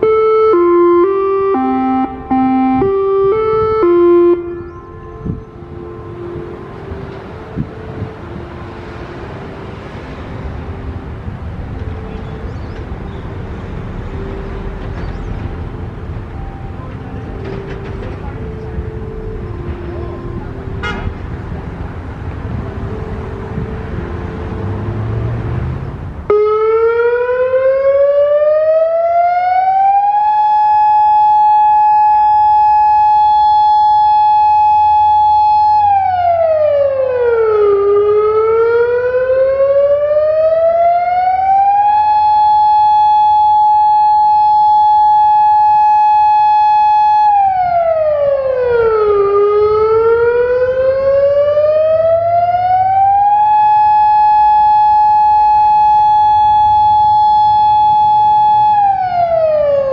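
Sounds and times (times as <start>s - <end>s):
electronic siren wailing: 0.0s - 8.4s, 26.3s - 59.9s
traffic noise: 0.0s - 59.9s.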